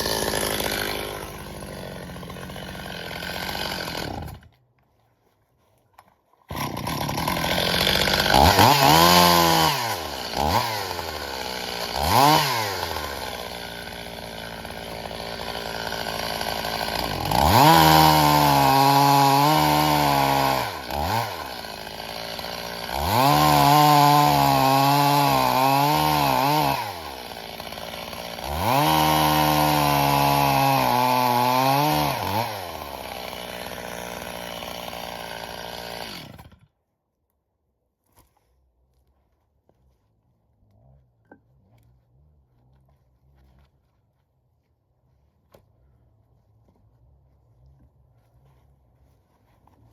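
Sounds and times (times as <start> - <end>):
chainsaw revving and idling: 0.0 - 4.5, 6.5 - 36.8.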